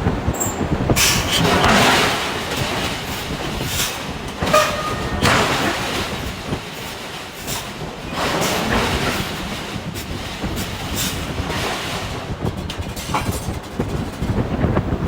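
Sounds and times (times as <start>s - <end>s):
high metallic squeal: 4.4s - 5.8s.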